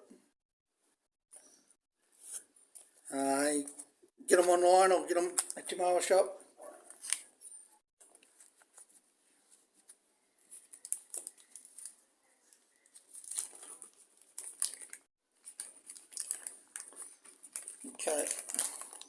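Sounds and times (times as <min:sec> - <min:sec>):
plastic packet crinkling: 0:10.6 - 0:19.0.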